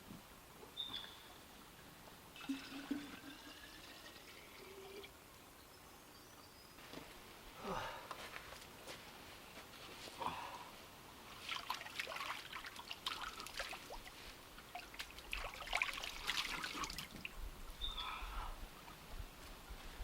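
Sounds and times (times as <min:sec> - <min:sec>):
creek water trickling and splashing: 0:11.2 - 0:17.8.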